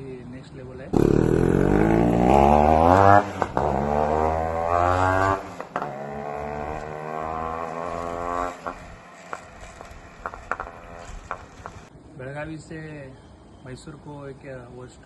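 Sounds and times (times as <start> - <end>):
two-stroke motorcycle accelerating: 0.9 - 11.9.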